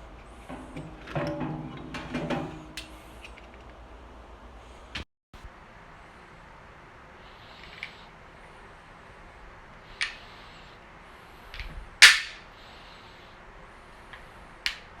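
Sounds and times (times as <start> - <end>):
hard objects clicking and knocking: 11.6 - 12.4.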